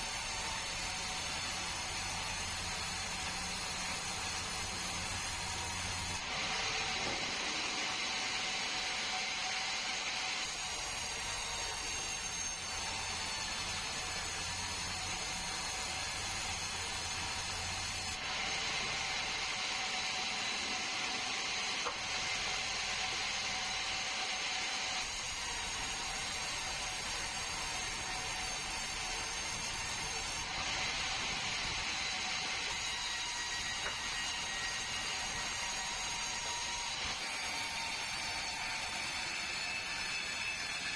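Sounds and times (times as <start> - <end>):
saw blade cutting log: 0.0 - 40.9
sawmill saw running: 0.0 - 40.9.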